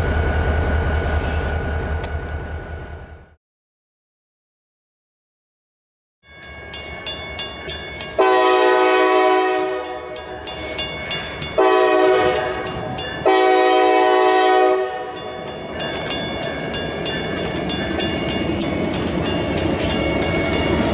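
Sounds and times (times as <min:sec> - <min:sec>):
train rumble: 0:00.0 - 0:03.4, 0:06.5 - 0:20.9
diesel locomotive horn blasts: 0:08.1 - 0:10.2, 0:11.5 - 0:15.2
train wheels clicking on rail joints: 0:09.8 - 0:13.3, 0:14.9 - 0:20.9.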